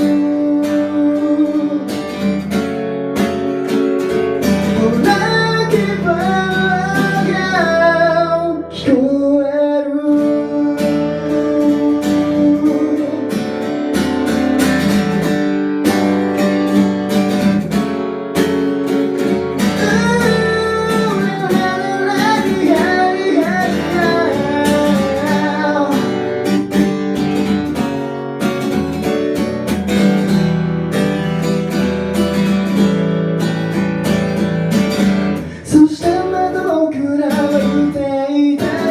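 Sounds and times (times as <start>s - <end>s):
person singing: 0.0s - 2.5s, 4.1s - 15.4s, 19.1s - 27.1s, 35.4s - 38.9s
acoustic guitar strumming: 0.0s - 38.9s.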